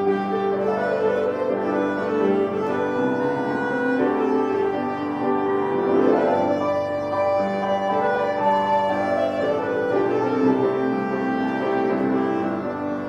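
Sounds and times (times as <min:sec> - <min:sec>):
sustained instrumental chords: 0:00.0 - 0:13.0.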